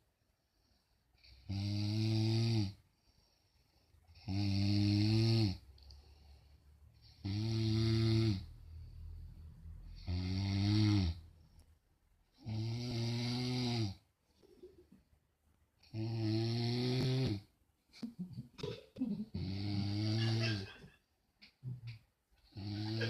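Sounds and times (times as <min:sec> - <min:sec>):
person snoring loudly: 0:07.2 - 0:08.5, 0:10.0 - 0:11.2, 0:15.9 - 0:17.4, 0:19.4 - 0:20.6, 0:22.6 - 0:23.0.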